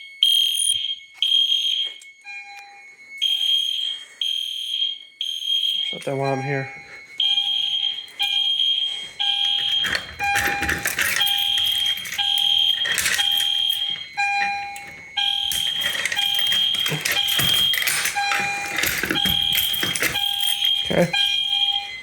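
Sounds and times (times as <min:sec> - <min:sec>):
fire alarm horn: 0:00.0 - 0:22.0
knocks and clatter: 0:09.5 - 0:21.0.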